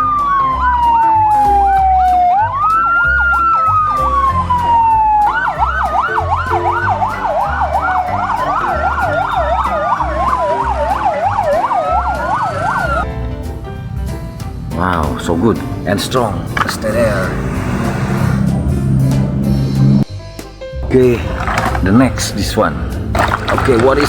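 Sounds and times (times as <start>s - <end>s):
electronic siren wail: 0.0s - 13.0s
fast warbling siren yelp: 0.0s - 13.0s.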